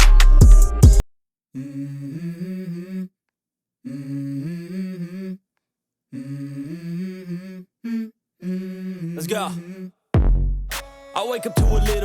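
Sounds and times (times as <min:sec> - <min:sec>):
hummed vocal melody: 0:01.6 - 0:03.1, 0:03.8 - 0:05.4, 0:06.1 - 0:10.0, 0:10.8 - 0:12.0.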